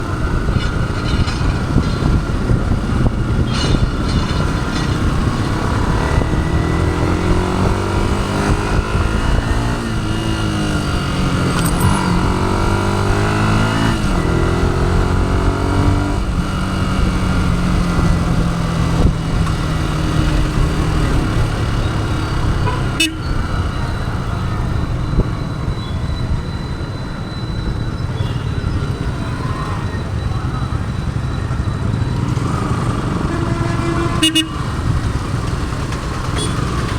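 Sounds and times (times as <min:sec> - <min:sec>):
wind and road noise: 0:00.0 - 0:36.9
motorcycle engine revving: 0:00.3 - 0:24.0, 0:31.2 - 0:36.9.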